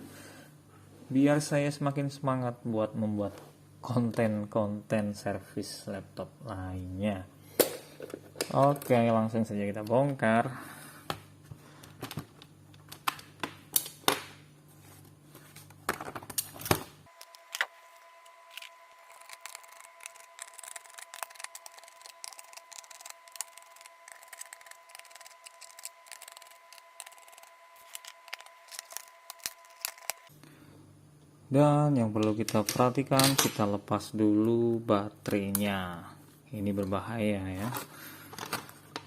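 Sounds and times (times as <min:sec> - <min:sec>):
faint high hum: 0:00.0 - 0:39.0.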